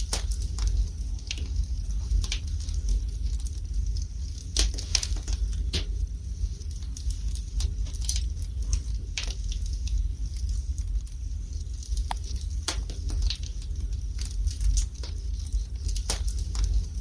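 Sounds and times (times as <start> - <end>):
low rumble of flames: 0.0 - 17.0
wood fire crackling and popping: 0.0 - 17.0.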